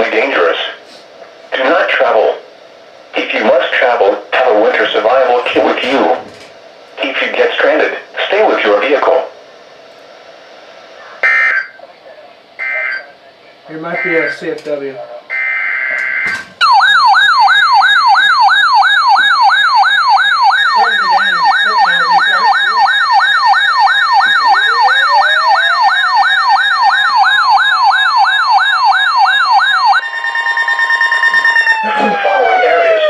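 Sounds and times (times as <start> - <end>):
warbling alert tone: 15.4 - 33.0.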